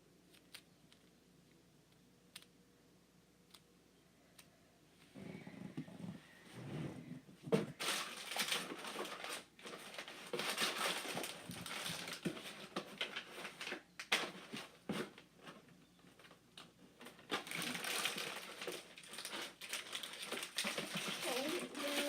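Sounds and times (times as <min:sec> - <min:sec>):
rustling and crinkling packaging: 0:06.0 - 0:22.0.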